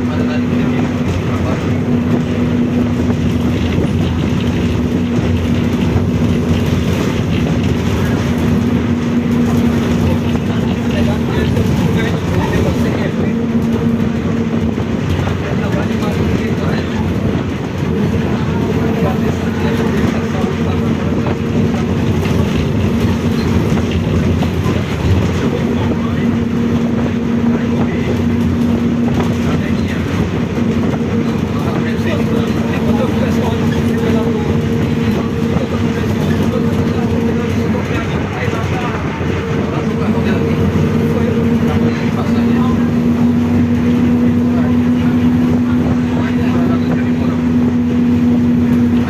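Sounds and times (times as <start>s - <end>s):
bus engine and road rumble: 0.0s - 49.0s
droning differential whine: 16.4s - 49.0s.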